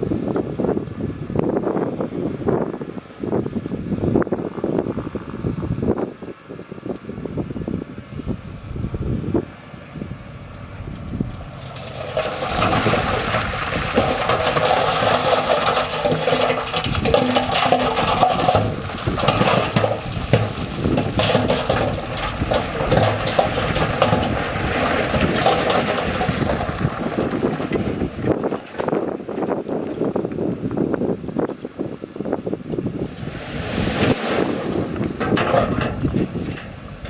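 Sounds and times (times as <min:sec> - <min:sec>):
rocks tumbling from dump truck: 0:11.0 - 0:37.0.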